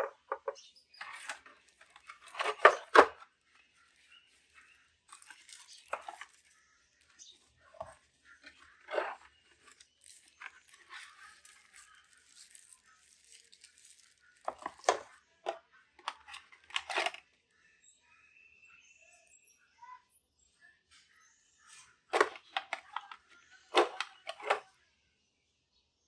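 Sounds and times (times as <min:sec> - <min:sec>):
sharp knocks and scrapes: 0:00.0 - 0:03.2, 0:22.2 - 0:24.6
packaging rustling and tearing: 0:05.1 - 0:06.6, 0:09.0 - 0:15.0.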